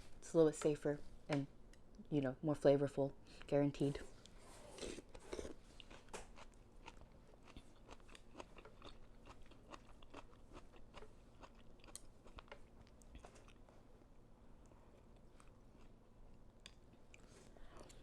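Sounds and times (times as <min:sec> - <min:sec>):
person chewing food: 0:04.7 - 0:18.0.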